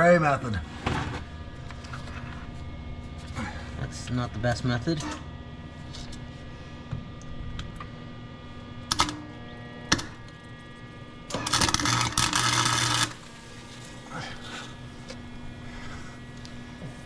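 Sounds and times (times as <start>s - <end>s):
steady low hum: 0.0s - 17.0s
welding arc crackling: 8.8s - 17.0s.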